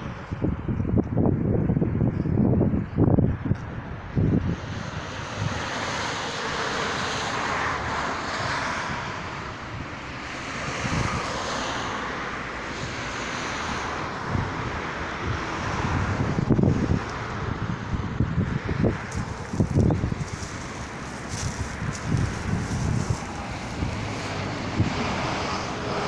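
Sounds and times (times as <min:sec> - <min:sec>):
wind buffeting microphone: 0:00.0 - 0:06.0, 0:14.2 - 0:26.0
road traffic: 0:00.0 - 0:26.0.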